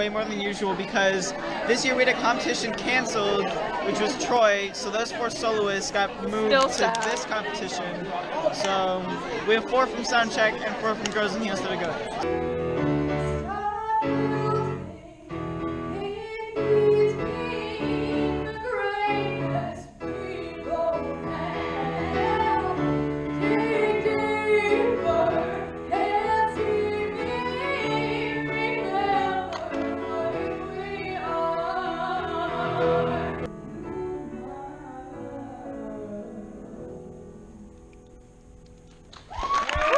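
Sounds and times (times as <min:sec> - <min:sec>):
operatic singing with vibrato: 0:16.0 - 0:37.0.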